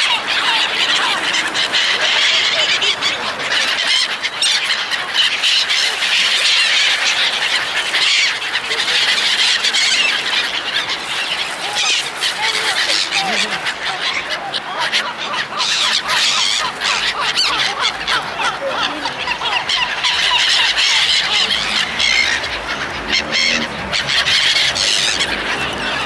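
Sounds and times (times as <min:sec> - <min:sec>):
seagulls calling: 0:00.0 - 0:26.0.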